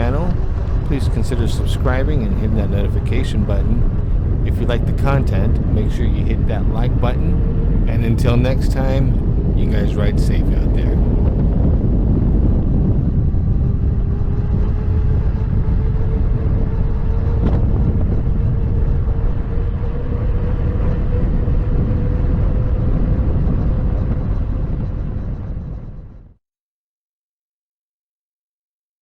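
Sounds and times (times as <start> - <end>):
wind rumble on microphone: 0.0 - 26.4
electric motor whine: 10.6 - 25.3.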